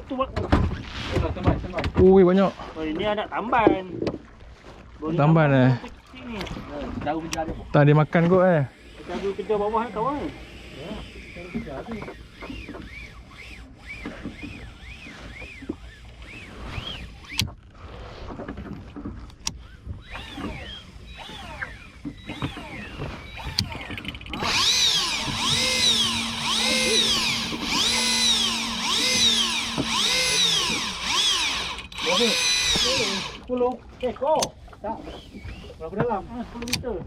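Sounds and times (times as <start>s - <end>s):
fishing reel motor whining: 7.3s - 17.6s, 19.6s - 33.5s.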